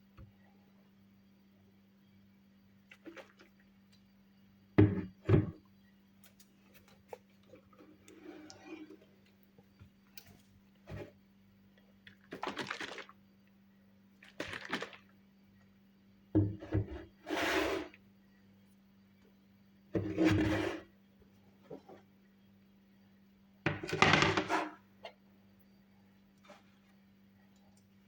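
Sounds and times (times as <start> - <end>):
faint steady hum: 0.0 - 28.0
kitchen knocks and thuds: 4.8 - 5.6, 16.4 - 17.0, 23.7 - 24.7.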